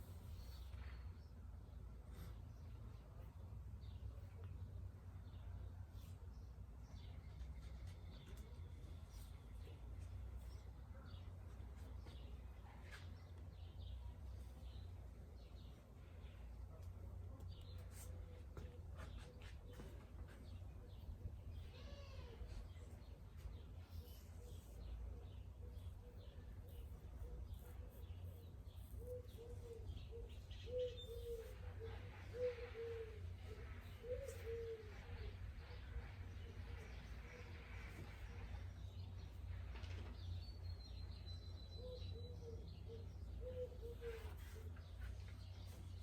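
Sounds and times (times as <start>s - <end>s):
birds chirping: 0.0s - 46.0s
dove cooing: 29.0s - 35.6s, 41.8s - 44.8s.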